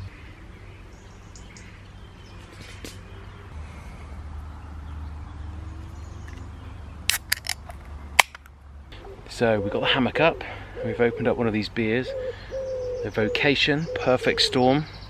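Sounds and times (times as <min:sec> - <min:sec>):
distant road traffic rumble: 0:00.0 - 0:15.0
faint bird calls: 0:08.9 - 0:15.0.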